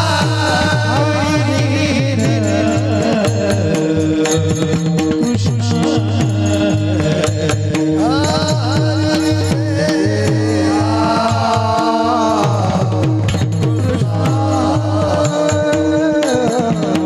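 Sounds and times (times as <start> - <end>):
person singing with glides: 0.0 - 13.1.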